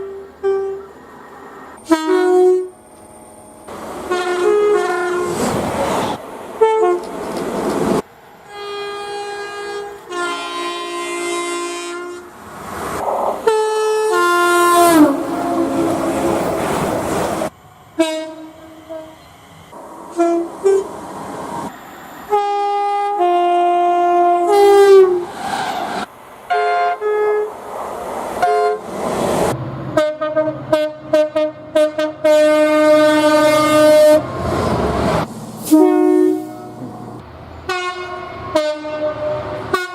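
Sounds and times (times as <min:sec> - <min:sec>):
train air horns: 0:00.0 - 0:02.8, 0:04.1 - 0:05.6, 0:06.6 - 0:07.1, 0:08.4 - 0:12.3, 0:13.3 - 0:16.8, 0:18.0 - 0:19.3, 0:20.1 - 0:20.9, 0:22.3 - 0:25.6, 0:26.5 - 0:27.5, 0:28.4 - 0:28.8, 0:29.9 - 0:34.3, 0:35.6 - 0:39.9
passing train rumble: 0:00.0 - 0:39.9.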